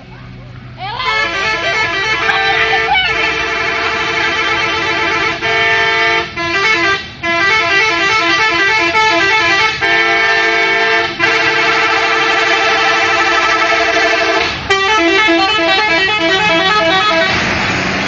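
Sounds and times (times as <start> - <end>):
bus multi-tone musical horn: 0.8 - 18.0.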